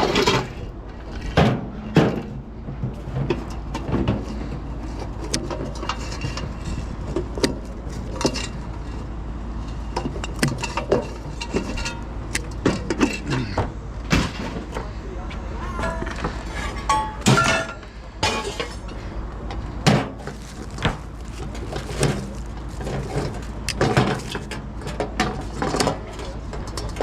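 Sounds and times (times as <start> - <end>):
low steady rumble: 0.0 - 27.0
scrap metal knocks and clinks: 15.6 - 19.0.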